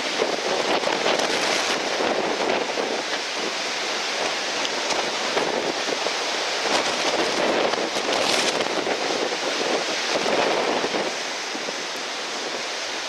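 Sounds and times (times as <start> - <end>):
breaking surf: 0.0 - 13.0
strong wind: 0.0 - 13.0.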